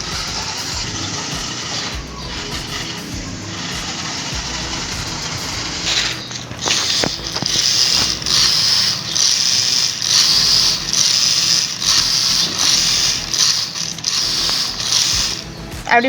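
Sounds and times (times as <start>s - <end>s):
sharp clicks: 0.0s - 16.0s
toy motors whirring and grinding: 0.0s - 16.0s.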